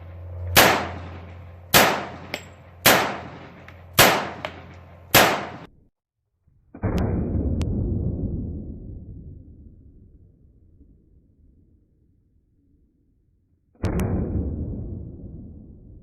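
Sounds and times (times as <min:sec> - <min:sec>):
sharp ringing bangs: 0:00.0 - 0:05.7
steady noisy sound: 0:00.0 - 0:05.7
low steady hum: 0:00.0 - 0:05.9.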